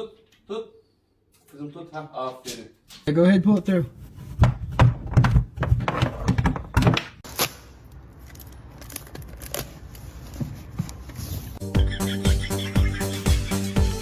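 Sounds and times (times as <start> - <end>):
knocks and thumps: 4.3 - 7.2.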